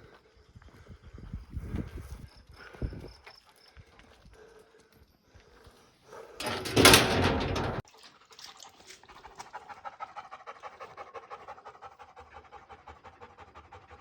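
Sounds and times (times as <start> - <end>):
dog panting fast: 9.3 - 14.0.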